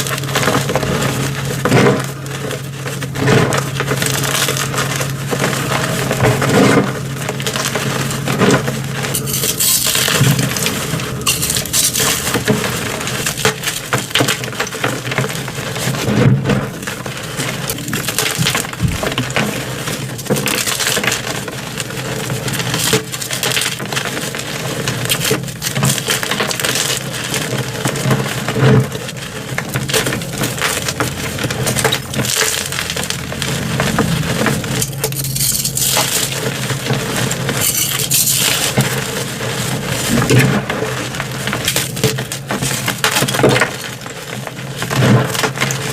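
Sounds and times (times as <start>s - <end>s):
chalk blocks crunching: 0.0s - 45.9s.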